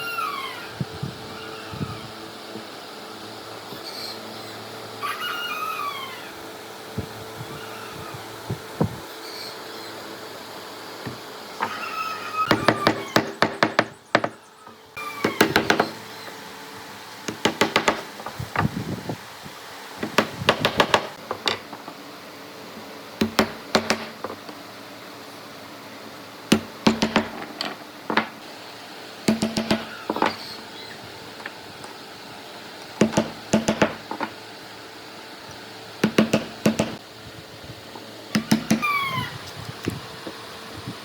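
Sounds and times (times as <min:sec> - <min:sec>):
hammer knocking on wood: 0:12.5 - 0:14.4, 0:17.3 - 0:18.0, 0:33.0 - 0:34.0, 0:36.0 - 0:37.0.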